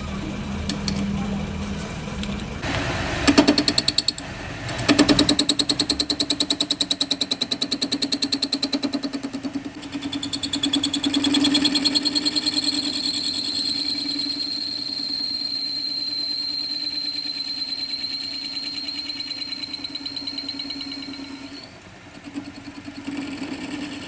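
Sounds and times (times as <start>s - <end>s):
workshop machine whining: 0.0s - 8.6s, 9.6s - 24.0s.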